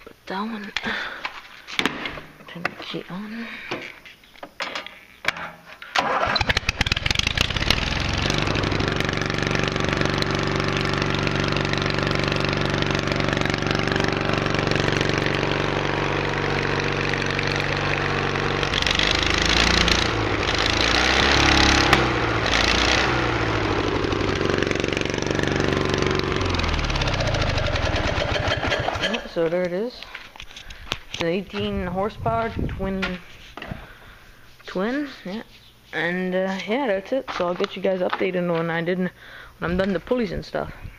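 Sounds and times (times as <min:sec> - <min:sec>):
electric starter cranking: 0:05.9 - 0:29.4
lawnmower engine running: 0:06.0 - 0:29.5.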